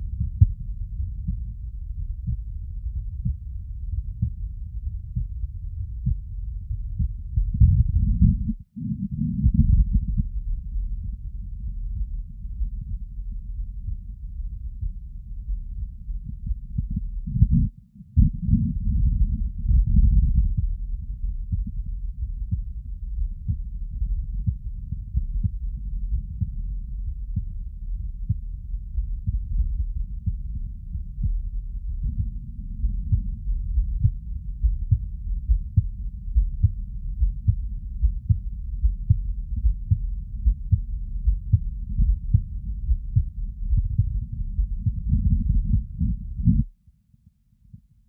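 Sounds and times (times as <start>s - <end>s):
dense rumble: 0.0s - 46.7s
muffled heartbeat thuds: 0.0s - 46.8s.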